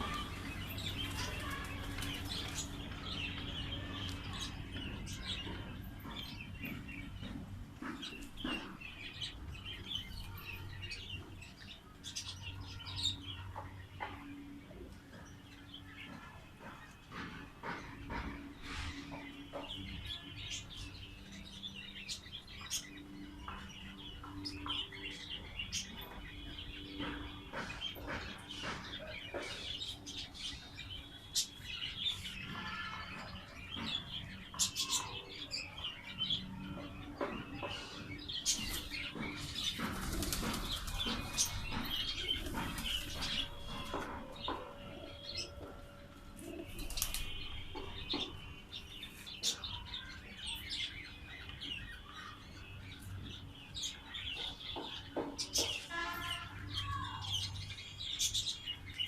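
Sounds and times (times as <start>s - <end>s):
pigeon wings flapping: 39.8s - 41.5s.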